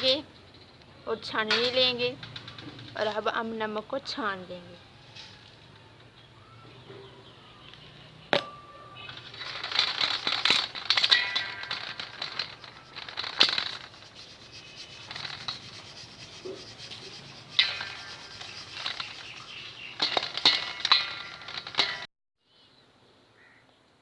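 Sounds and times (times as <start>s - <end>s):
sieve ringing: 8.3s - 22.0s
salt grains pattering in sieve: 9.2s - 22.0s.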